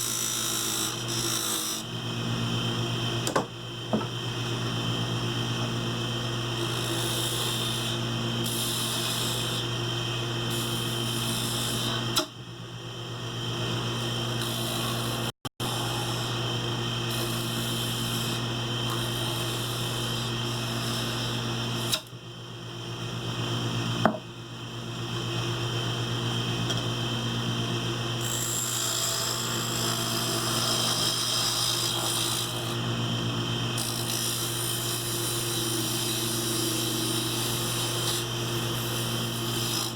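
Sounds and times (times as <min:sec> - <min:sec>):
wood lathe motor hum: 0:00.0 - 0:01.9, 0:14.4 - 0:22.0, 0:28.2 - 0:39.9.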